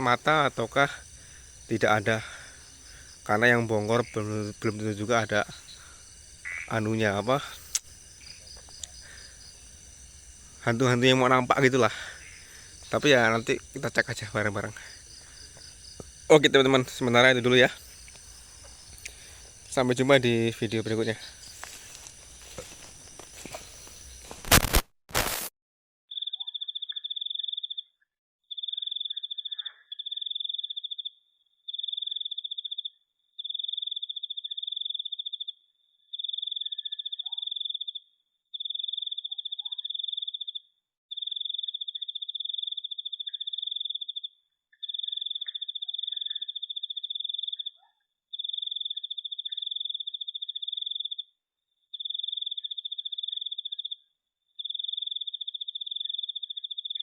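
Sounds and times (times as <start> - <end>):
faint chirps: 0.0 - 24.4
cricket trilling: 0.0 - 24.8, 38.6 - 51.3, 51.9 - 54.0, 54.6 - 57.0
sharp clicks: 7.5 - 8.0, 8.6 - 9.0.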